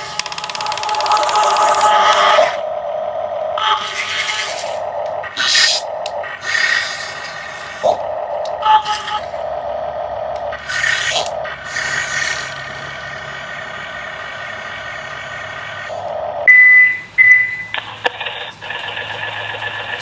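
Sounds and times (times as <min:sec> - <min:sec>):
toy engine-like hum: 0:00.0 - 0:16.5, 0:17.6 - 0:20.0
loud high beep: 0:16.5 - 0:17.7.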